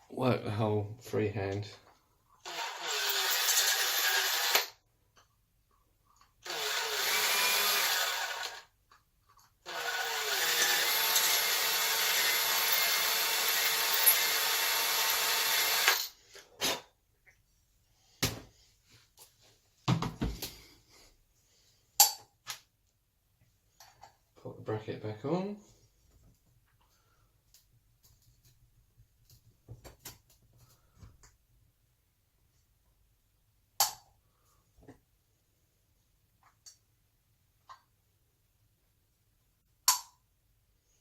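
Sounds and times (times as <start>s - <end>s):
electric drill running: 2.4s - 4.8s, 6.4s - 8.7s, 9.6s - 16.1s.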